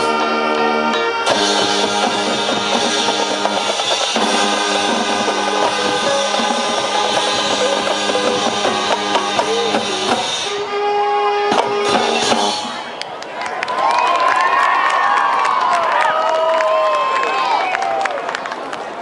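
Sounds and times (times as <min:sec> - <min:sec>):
brass holding chords: 0:00.0 - 0:12.9
drumline beating: 0:01.3 - 0:12.9.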